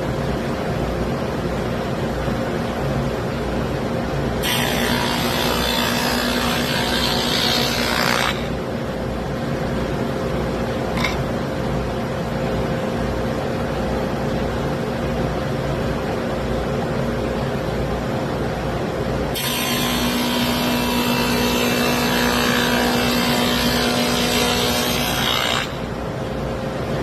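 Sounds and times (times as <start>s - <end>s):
router cutting wood: 4.4s - 8.6s, 19.4s - 25.9s.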